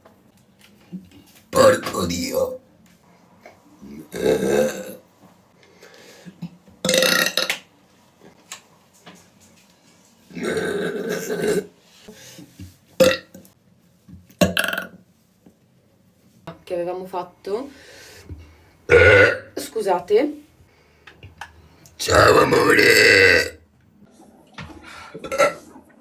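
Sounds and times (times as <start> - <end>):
woman burping: 4.1 - 5.0, 6.9 - 7.5, 10.4 - 11.7, 14.4 - 14.9, 18.9 - 19.6, 22.1 - 23.6, 25.2 - 25.6.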